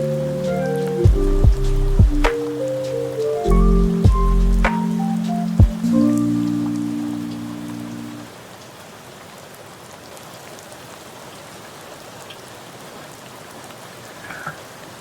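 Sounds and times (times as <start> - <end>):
held music chord: 0.0 - 8.3
rain falling: 0.0 - 15.0.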